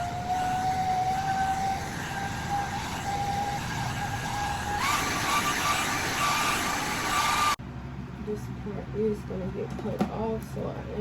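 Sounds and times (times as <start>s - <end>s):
hair dryer running: 0.0s - 7.6s.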